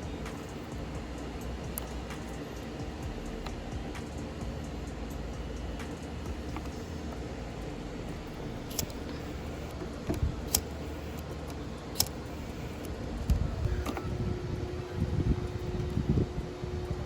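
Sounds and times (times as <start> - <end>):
low background hum: 0.0 - 17.0
sharp clicks: 8.7 - 14.1.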